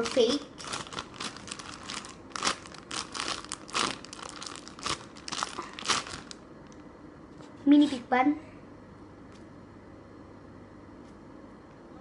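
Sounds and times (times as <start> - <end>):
squishy toy crinkling and rustling: 0.0 - 6.4.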